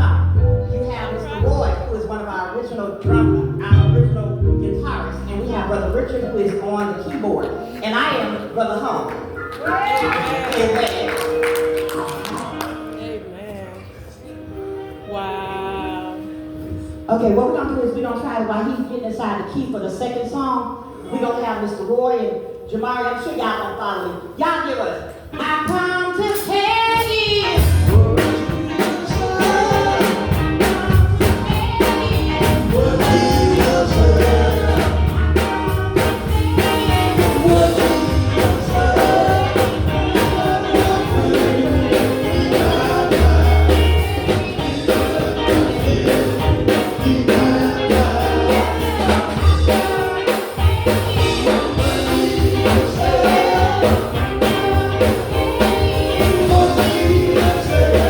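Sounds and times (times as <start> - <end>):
gospel band playing: 0.0 - 58.0
person singing: 27.0 - 35.6, 36.2 - 58.0
steady drum beat: 27.3 - 58.0.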